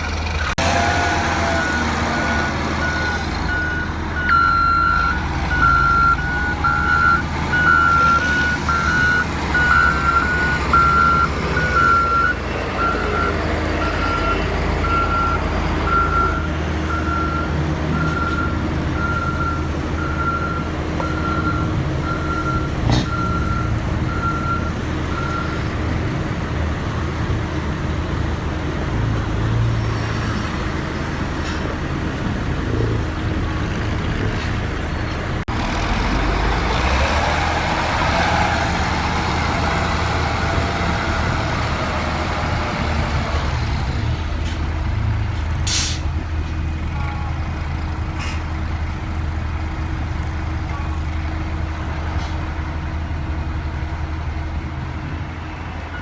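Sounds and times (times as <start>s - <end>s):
diesel engine rumble: 0.0s - 56.0s
reversing alarm beeping: 1.6s - 25.6s.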